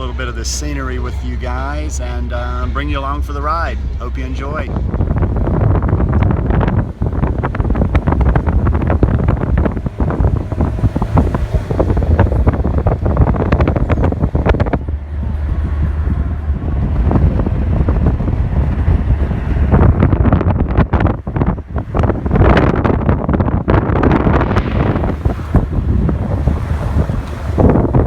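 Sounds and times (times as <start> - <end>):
car road and engine rumble: 0.0 - 28.0
wind buffeting microphone: 0.0 - 28.0.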